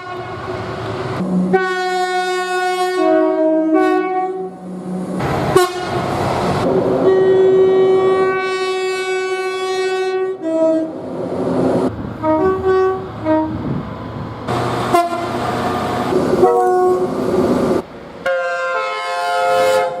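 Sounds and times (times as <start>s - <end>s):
train horn blasts: 0.0s - 0.6s, 1.5s - 4.6s, 5.5s - 6.0s, 7.0s - 10.9s, 12.2s - 13.7s, 14.9s - 15.4s, 16.4s - 17.1s, 18.3s - 20.0s
passing train rumble: 0.0s - 20.0s.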